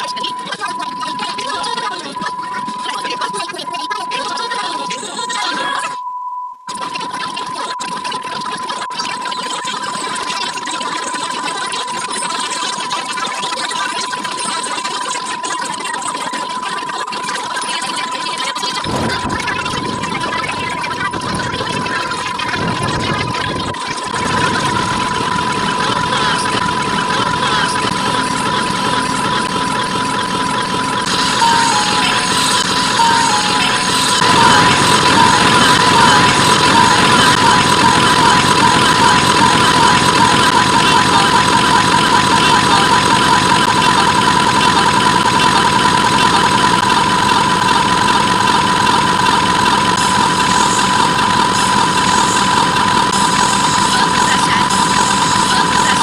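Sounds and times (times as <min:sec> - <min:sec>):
overlapping sound effects: 0:00.0 - 0:06.0, 0:06.7 - 0:56.0
steady high beep tone: 0:00.0 - 0:56.0
loud static noise: 0:18.8 - 0:56.0.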